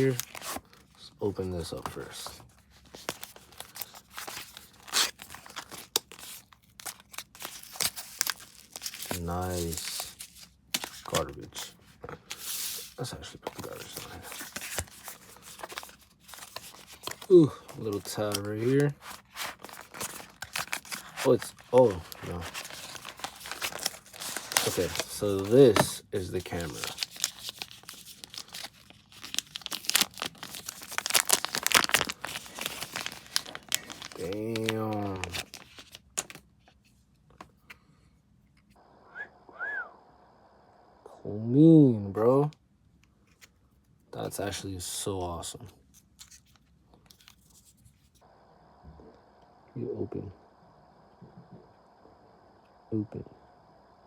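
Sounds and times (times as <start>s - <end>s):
packaging rustling and tearing: 0.0s - 1.0s, 1.6s - 36.4s, 45.8s - 48.2s.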